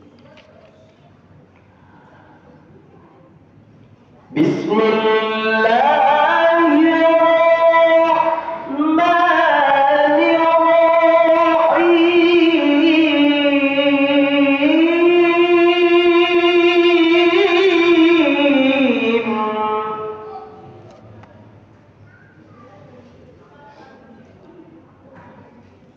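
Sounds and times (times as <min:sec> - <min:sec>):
man reciting melodically: 0:04.3 - 0:21.0.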